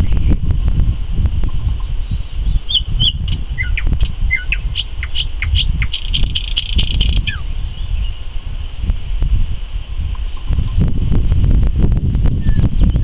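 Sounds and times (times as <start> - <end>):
steady low rumble: 0.0 - 13.0
nightingale singing: 1.5 - 8.9, 9.7 - 13.0.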